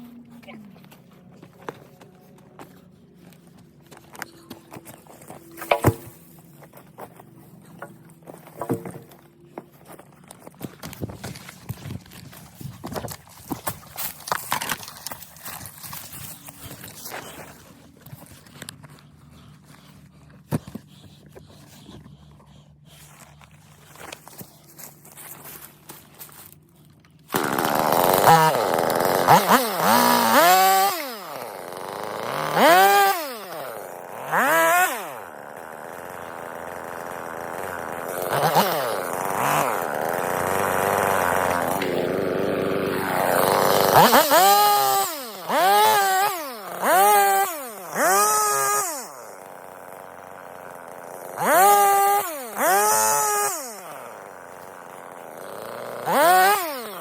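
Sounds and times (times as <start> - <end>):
chainsaw revving: 13.7 - 17.7, 27.3 - 57.0.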